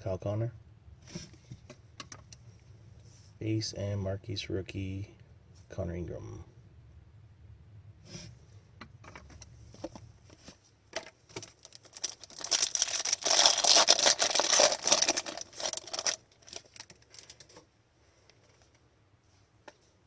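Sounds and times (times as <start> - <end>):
wrapper crinkling and tearing: 11.4 - 17.6.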